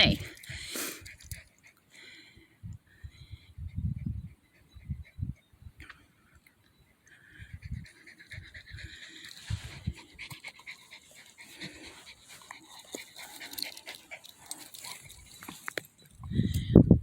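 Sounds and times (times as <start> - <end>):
dog panting: 0.2 - 2.2, 7.2 - 15.8.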